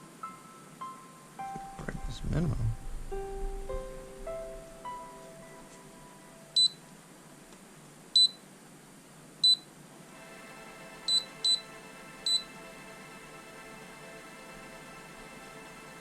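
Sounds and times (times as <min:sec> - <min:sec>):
short high key-press beeps: 0:08.2 - 0:08.4.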